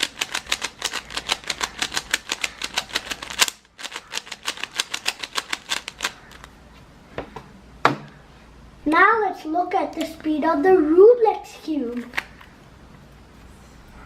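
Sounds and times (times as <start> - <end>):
speed cube layers clicking: 0.0 - 6.5.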